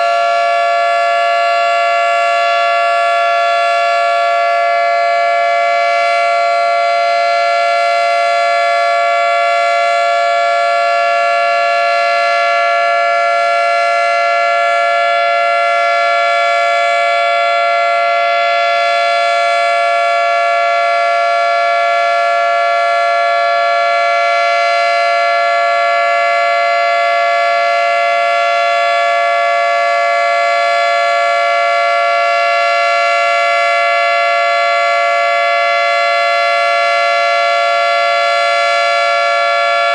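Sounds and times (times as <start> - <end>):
outdoor warning siren chord: 0.0 - 39.9.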